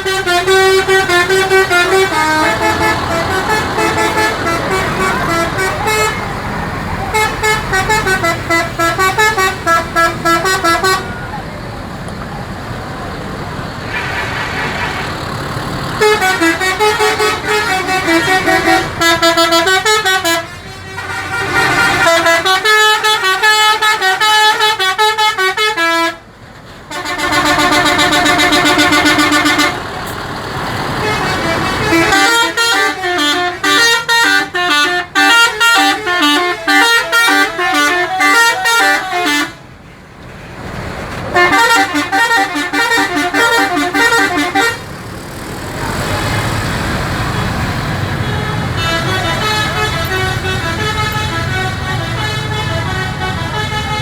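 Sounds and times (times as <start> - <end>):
bus air horns tooting melodies: 0.0 - 11.5, 13.8 - 26.3, 26.9 - 40.0, 41.3 - 45.0, 45.7 - 54.0.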